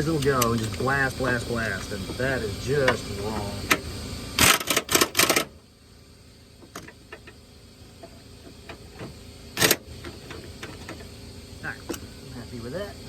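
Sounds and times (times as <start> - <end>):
impact wrench bursts: 0.0 - 5.6, 8.0 - 11.1
tool handling clicks: 0.2 - 0.9, 2.9 - 5.5.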